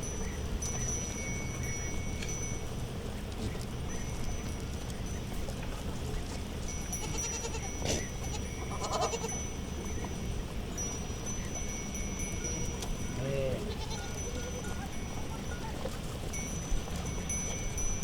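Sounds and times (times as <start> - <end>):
ringing herd bells: 0.0 - 18.0
goats bleating: 7.0 - 9.4, 13.2 - 14.7.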